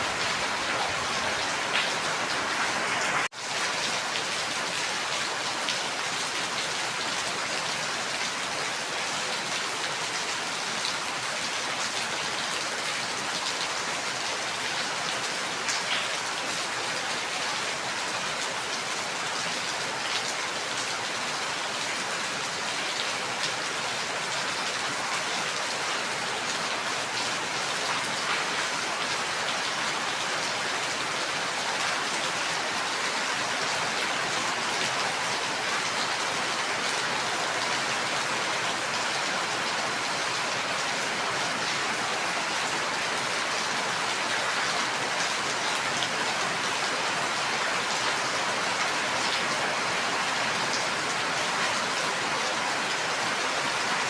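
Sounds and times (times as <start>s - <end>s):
rain drops ticking on a surface: 0.0s - 23.8s
steady rain falling: 0.0s - 54.0s.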